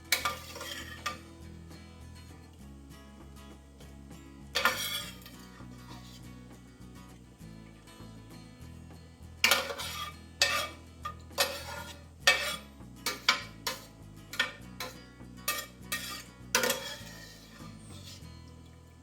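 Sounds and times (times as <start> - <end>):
metal utensil clinking on pots and jars: 0.0 - 1.6, 4.5 - 6.2, 9.3 - 19.0
soft background music: 0.0 - 19.0.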